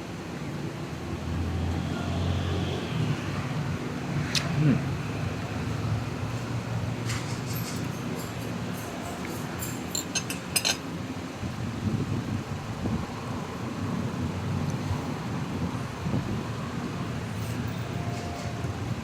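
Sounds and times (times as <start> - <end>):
cutlery clinking on plate: 7.1 - 10.8.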